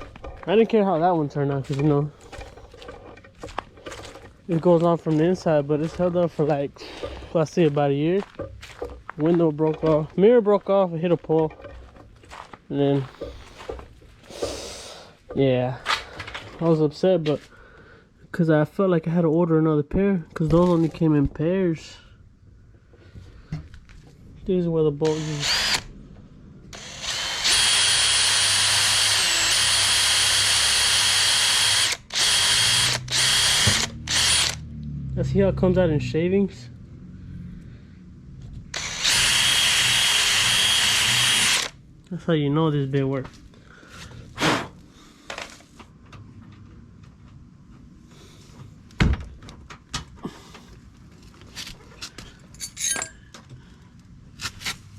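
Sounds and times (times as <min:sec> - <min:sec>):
tools knocking and clunking: 0:08.3 - 0:10.0, 0:11.3 - 0:12.4
power drill boring: 0:25.0 - 0:25.9, 0:26.7 - 0:34.6, 0:38.7 - 0:41.8.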